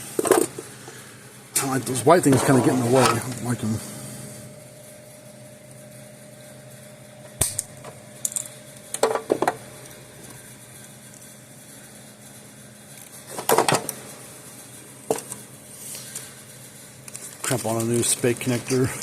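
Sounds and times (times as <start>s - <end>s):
steady low hum: 0.0s - 19.0s
tools clicking and rattling: 7.4s - 9.5s.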